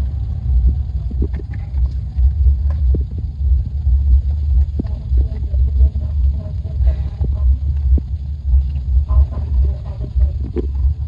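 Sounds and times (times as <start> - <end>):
low uneven rumble: 0.0 - 11.0.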